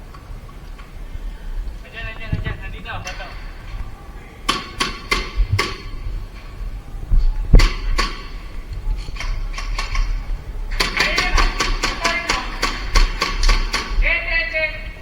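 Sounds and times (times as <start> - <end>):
airsoft guns firing: 4.4 - 6.7, 7.5 - 14.8.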